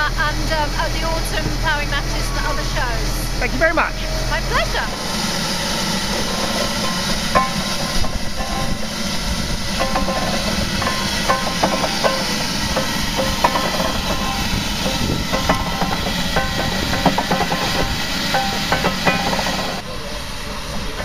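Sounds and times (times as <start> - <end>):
steam engine hissing and rumbling: 0.0 - 21.0.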